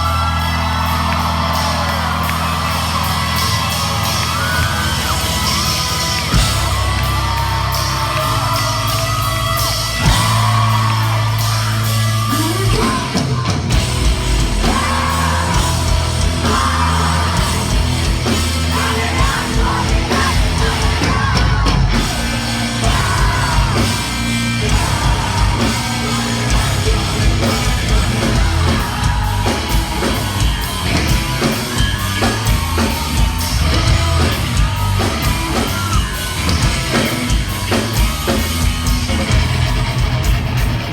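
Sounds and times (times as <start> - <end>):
yelled and sung vocals: 0.0 - 40.3
loud rock band playing: 0.0 - 40.9.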